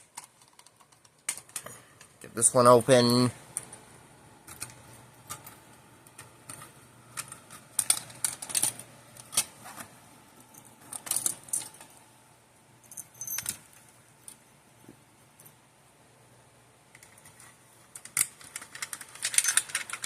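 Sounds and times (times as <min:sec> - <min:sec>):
keys jangling: 0:12.9 - 0:13.7
keys clicking in locks: 0:12.9 - 0:14.4, 0:17.0 - 0:20.0.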